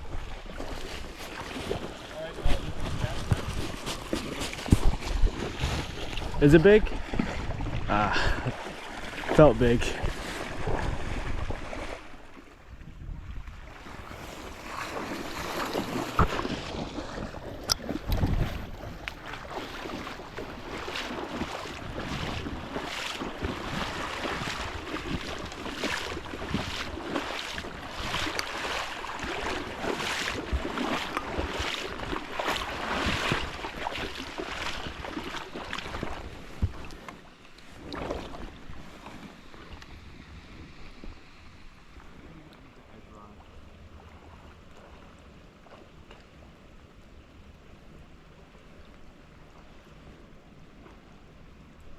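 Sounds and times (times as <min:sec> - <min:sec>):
rushing creek water: 0:00.0 - 0:12.8, 0:13.4 - 0:51.9
wind buffeting microphone: 0:01.4 - 0:08.7, 0:09.9 - 0:37.0.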